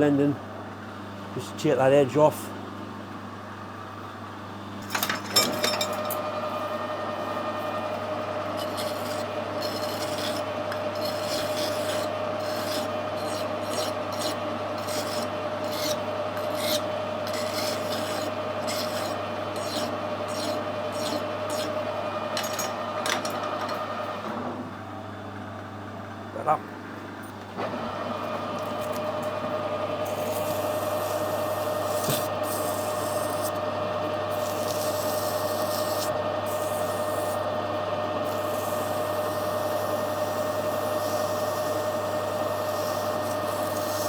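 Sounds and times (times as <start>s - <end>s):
abrasive machine humming: 4.6s - 25.0s, 27.6s - 44.0s
metal rasping against abrasive: 8.5s - 21.8s, 30.1s - 33.6s, 34.3s - 37.5s, 38.2s - 44.0s.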